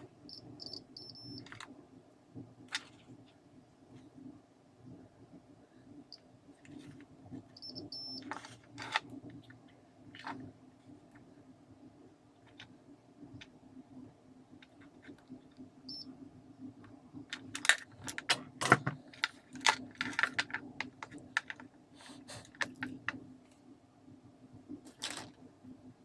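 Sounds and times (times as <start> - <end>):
faint low hum: 0.0 - 26.0
small parts clicking and tapping: 16.8 - 21.7.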